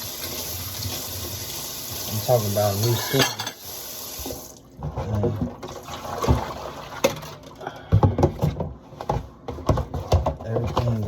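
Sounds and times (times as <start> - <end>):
water sloshing in a sink: 0.0 - 8.5.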